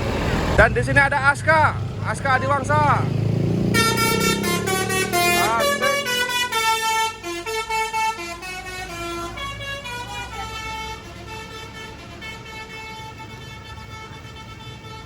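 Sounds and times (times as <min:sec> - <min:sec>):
low engine rumble: 0:00.0 - 0:15.0
bus horn playing multi-note tune: 0:03.7 - 0:15.0.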